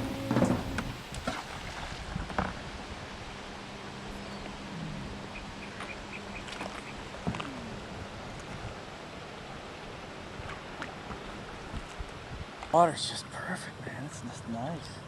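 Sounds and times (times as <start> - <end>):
paddle splashes and knocks: 0.0 - 2.6
river water moving: 0.0 - 15.0.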